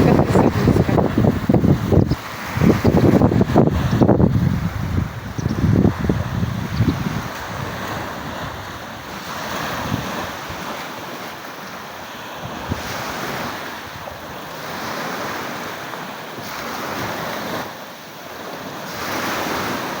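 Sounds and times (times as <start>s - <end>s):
wind gusting on microphone: 0.0s - 11.3s, 12.3s - 15.8s
sea waves washing ashore: 0.0s - 20.0s.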